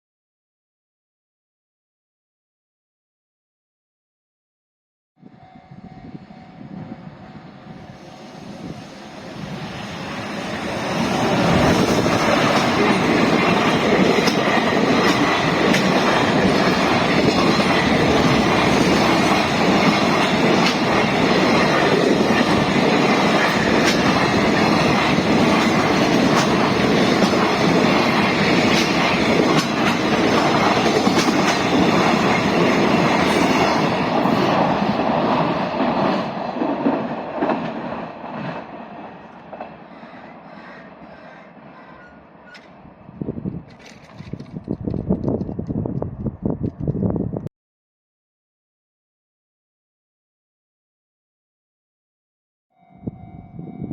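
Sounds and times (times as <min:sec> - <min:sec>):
freight train passing: 0:05.2 - 0:47.3, 0:52.8 - 0:53.9
wheels clattering over rail joints: 0:43.6 - 0:45.7.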